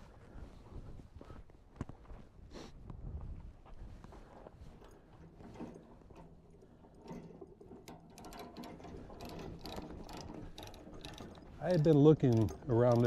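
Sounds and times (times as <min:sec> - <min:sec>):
chain links clinking: 0:04.8 - 0:13.0
ratchet chain binder clicking: 0:04.8 - 0:13.0.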